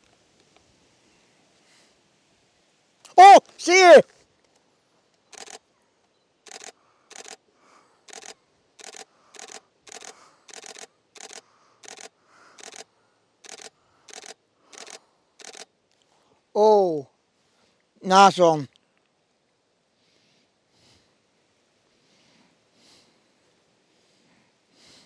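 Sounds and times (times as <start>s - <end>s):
camera shutter firing: 5.3s - 5.6s, 6.5s - 7.4s, 8.1s - 12.8s, 13.4s - 15.7s.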